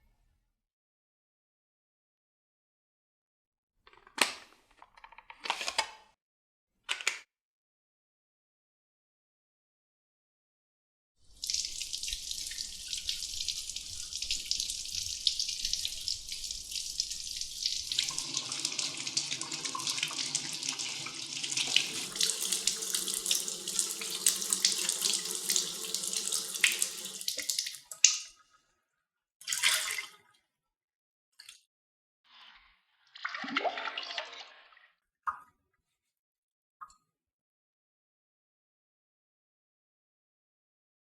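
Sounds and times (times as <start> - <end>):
tap water running into sink: 11.4 - 28.3.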